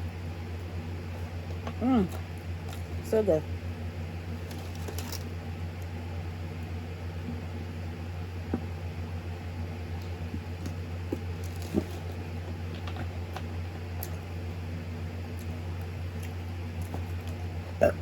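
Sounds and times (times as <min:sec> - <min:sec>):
steady low hum: 0:00.0 - 0:18.0
person chewing: 0:15.4 - 0:18.0.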